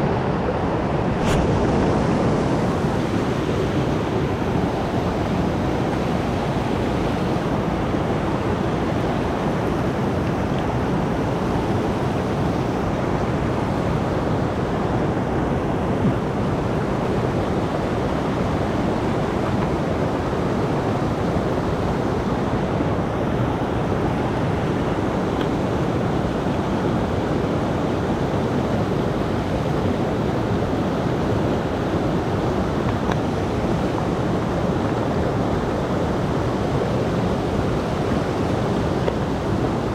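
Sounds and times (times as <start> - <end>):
stream rushing: 0.0 - 39.9.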